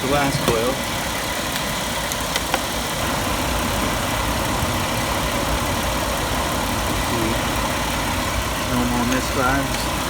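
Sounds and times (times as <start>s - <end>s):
van engine idling: 0.0s - 10.0s.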